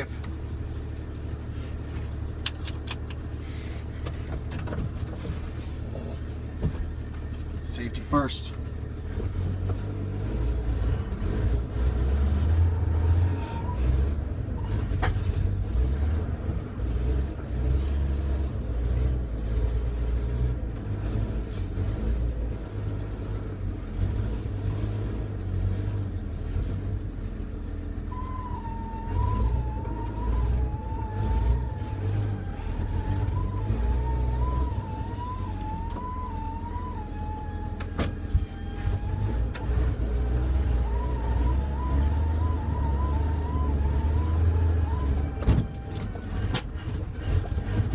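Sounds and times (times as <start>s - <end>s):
pickup truck engine rumble: 0.0s - 47.9s
high wavering tone: 28.1s - 46.5s.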